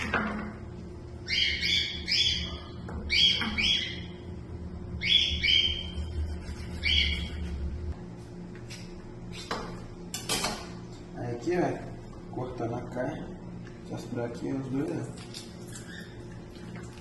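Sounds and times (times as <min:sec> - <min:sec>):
bird calling harshly: 0:01.2 - 0:04.2, 0:05.0 - 0:06.0.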